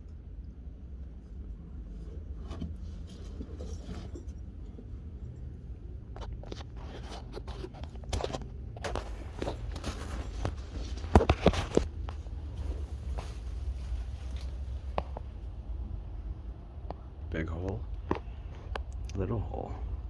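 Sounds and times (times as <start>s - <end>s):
scraping and rustling on rock: 1.4s - 15.8s.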